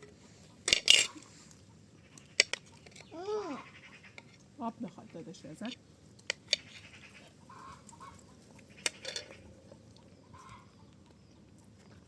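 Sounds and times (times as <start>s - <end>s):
chickens clucking: 6.5s - 11.1s.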